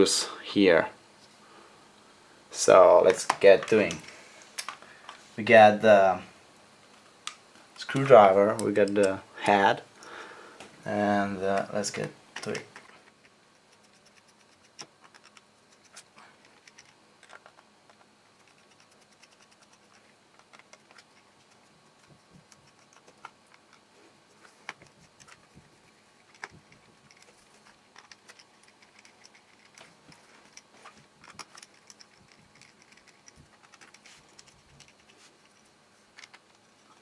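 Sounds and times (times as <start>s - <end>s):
small screwdriver clicking and scratching: 12.0s - 23.8s, 24.6s - 36.8s.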